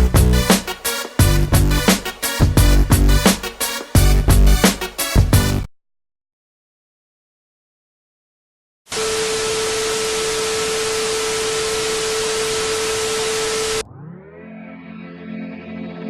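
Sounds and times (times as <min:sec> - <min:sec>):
loud static hiss: 0:08.9 - 0:13.8.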